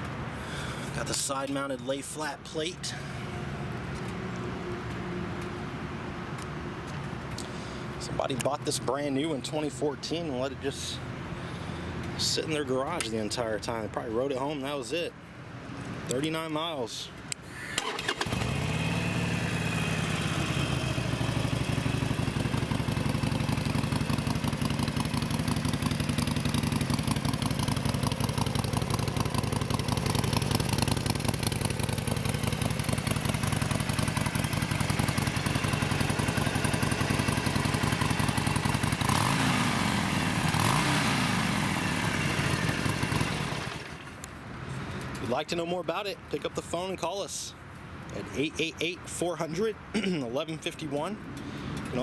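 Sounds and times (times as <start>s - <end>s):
motorcycle engine idling and revving: 17.9s - 44.5s.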